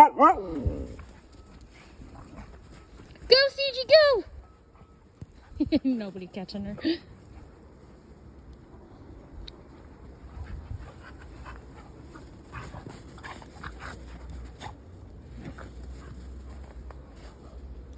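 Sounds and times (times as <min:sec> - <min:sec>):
dogs panting: 0:04.2 - 0:07.7, 0:09.9 - 0:17.6.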